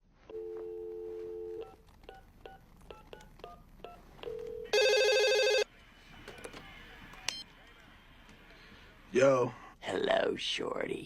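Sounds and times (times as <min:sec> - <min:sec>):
telephone dial tone: 0:04.2 - 0:05.6
harsh buzzy telephone ring: 0:04.3 - 0:05.7.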